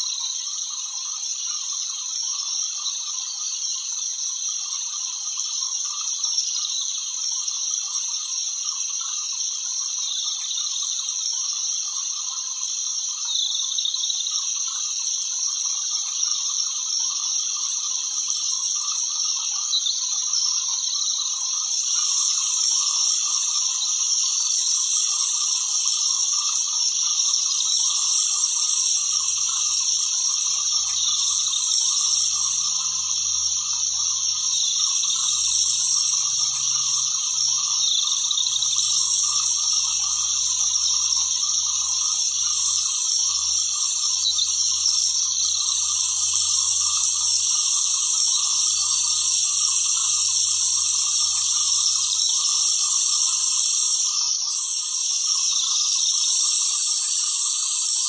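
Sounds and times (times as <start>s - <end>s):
light rain hissing: 28.4s - 54.4s.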